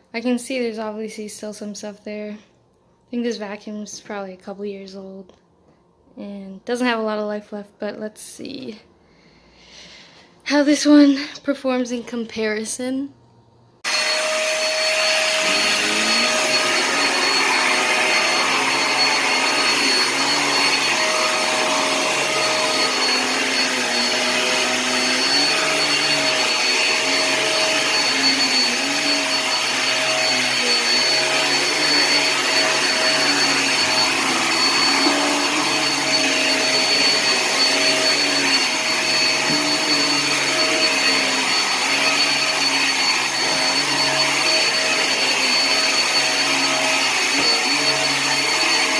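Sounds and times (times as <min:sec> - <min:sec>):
vacuum cleaner running over carpet: 0:13.8 - 0:48.9.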